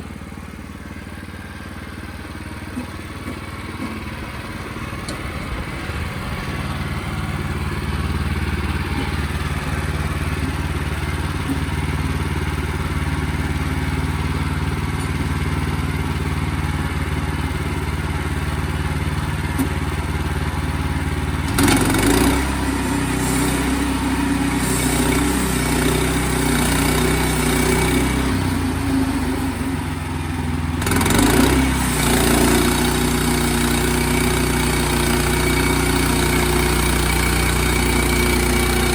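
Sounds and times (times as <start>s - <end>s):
sawmill engine droning: 0.0s - 38.9s
saw blade hissing: 21.6s - 28.2s.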